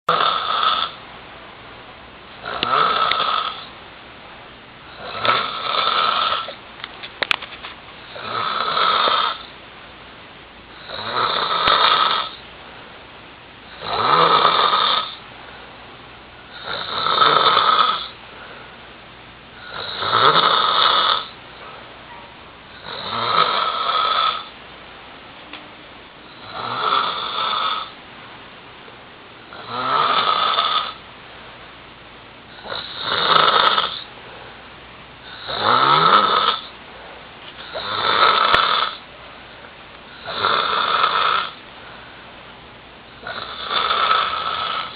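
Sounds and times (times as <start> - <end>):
person snoring heavily: 0.1 - 1.0, 2.4 - 3.7, 4.9 - 6.6, 8.1 - 9.5, 10.8 - 12.4, 13.7 - 15.2, 16.5 - 18.2, 19.6 - 21.4, 22.8 - 24.5, 26.3 - 28.0, 29.5 - 31.0, 32.5 - 34.1, 35.2 - 36.7, 37.6 - 39.0, 40.1 - 41.6, 43.2 - 44.9.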